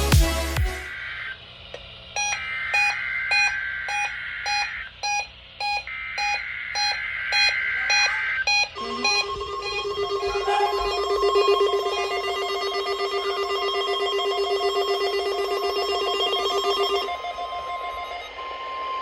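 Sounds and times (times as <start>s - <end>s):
even beeping: 2.1s - 19.0s
steady alert tone: 8.7s - 18.5s.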